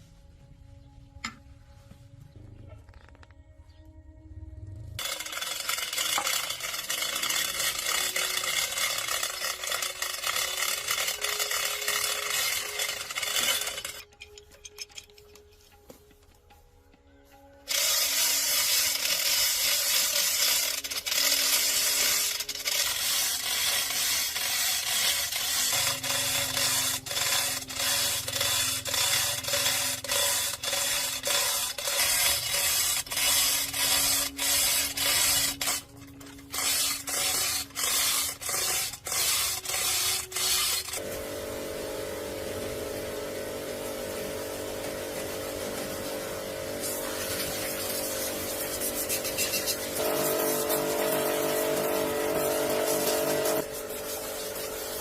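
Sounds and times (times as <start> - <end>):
abrasive rubbing on metal: 17.7 - 41.0, 46.8 - 55.0.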